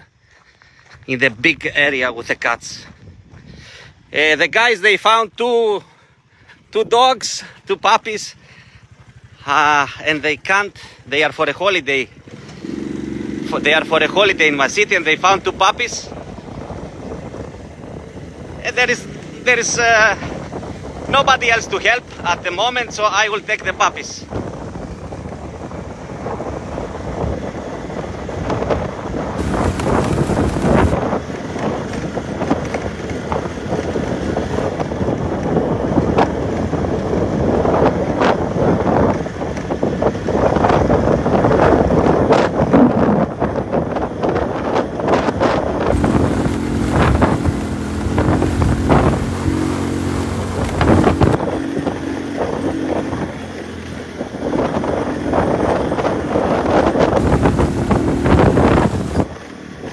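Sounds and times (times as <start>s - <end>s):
wind buffeting microphone: 2.9s - 4.1s, 12.1s - 23.0s, 23.6s - 59.9s.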